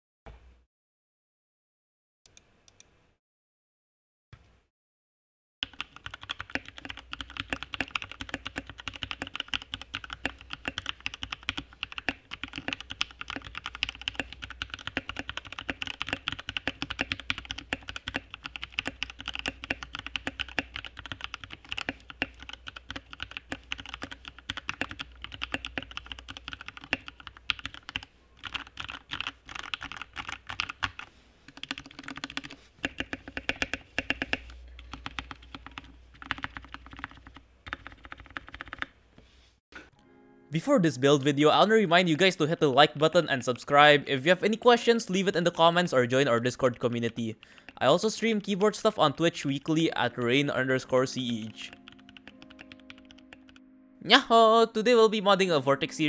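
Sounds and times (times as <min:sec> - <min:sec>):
mechanical keyboard typing: 0:05.6 - 0:38.9, 0:51.0 - 0:53.6.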